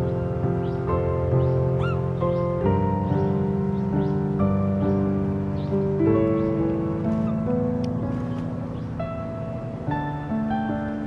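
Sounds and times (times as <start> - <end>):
slow keyboard chords: 0.0 - 11.0.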